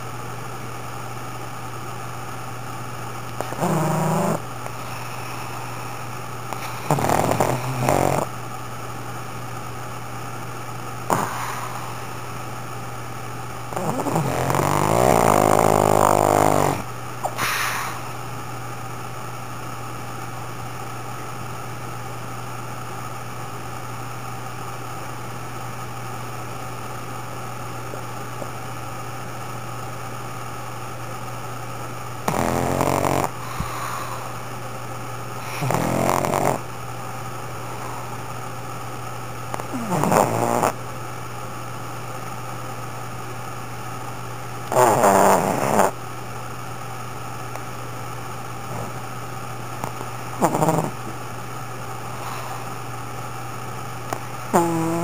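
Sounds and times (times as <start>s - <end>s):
steady low hum: 0.0s - 55.0s
dog snoring loudly: 3.4s - 5.8s, 6.5s - 8.3s, 11.0s - 12.3s, 13.7s - 18.1s, 32.2s - 34.4s, 35.4s - 36.7s, 39.5s - 40.8s, 44.7s - 46.0s, 48.7s - 49.0s, 49.9s - 51.1s, 54.5s - 55.0s.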